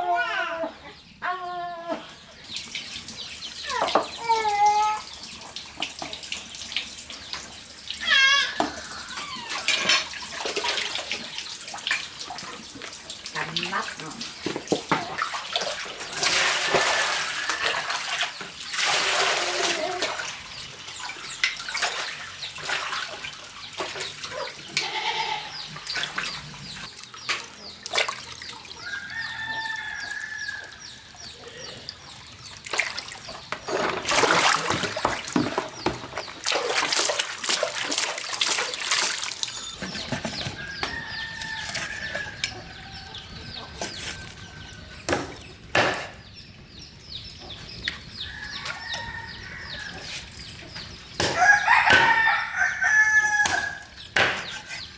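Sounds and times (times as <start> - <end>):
water splashing: 2.4 - 44.8
rooster crowing: 28.8 - 30.8, 51.4 - 53.9.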